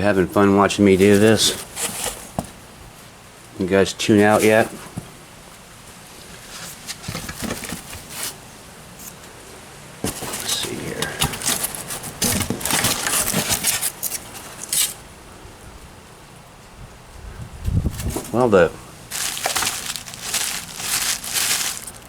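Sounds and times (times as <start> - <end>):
packing foam crackling and rustling: 0.0 - 2.7, 4.2 - 5.1, 6.2 - 9.2, 10.0 - 15.1, 17.7 - 22.0.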